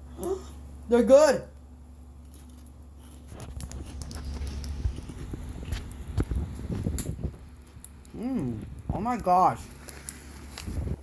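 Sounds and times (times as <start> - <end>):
crunchy food being chewed: 2.2 - 8.8.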